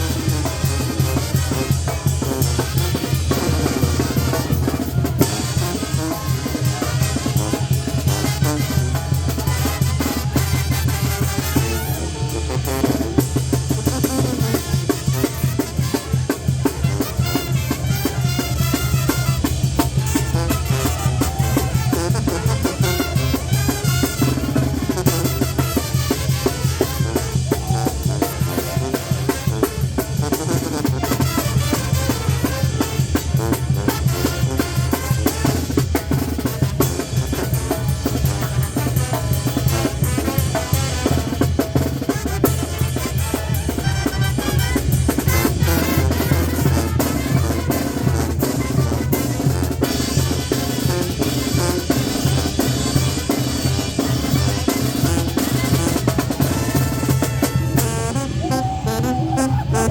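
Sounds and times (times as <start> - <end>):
banda dance music: 0.0 - 59.9
snare and bass drum beat: 0.0 - 59.9
heavy bass line: 55.9 - 59.9.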